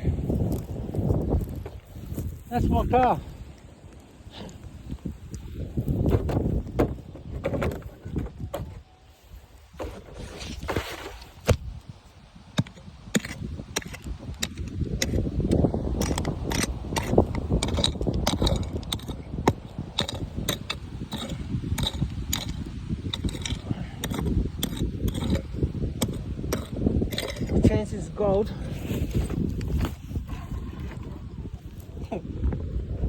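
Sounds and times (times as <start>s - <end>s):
wind buffeting microphone: 0.0s - 33.0s
sharp clicks and knocks: 12.6s - 27.7s.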